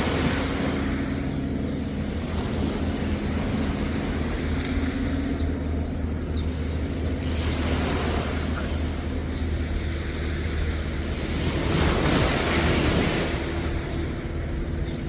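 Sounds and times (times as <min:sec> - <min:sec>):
low engine drone: 0:00.0 - 0:15.0
wind: 0:00.0 - 0:15.0
surf: 0:07.1 - 0:15.0.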